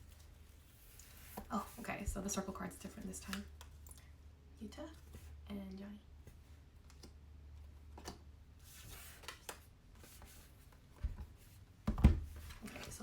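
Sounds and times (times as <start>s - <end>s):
paper rustling: 8.0s - 10.8s.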